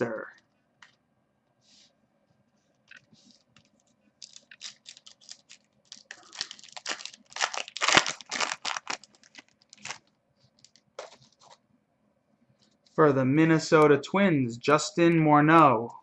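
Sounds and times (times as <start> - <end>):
foil wrapper tearing and crinkling: 4.2 - 10.8.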